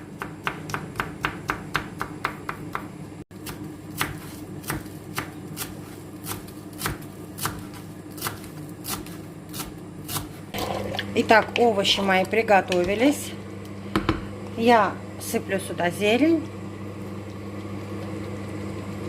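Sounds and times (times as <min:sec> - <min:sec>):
knife chopping garlic: 0:00.0 - 0:10.4.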